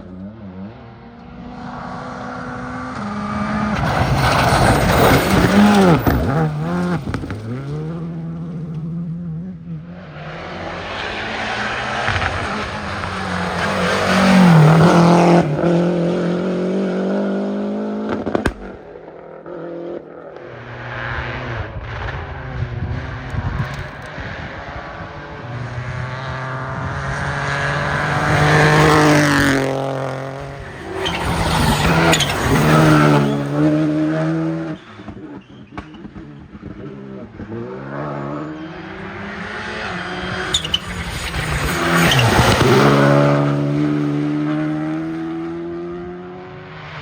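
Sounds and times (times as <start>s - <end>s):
rally cars racing past: 0.0s - 47.0s.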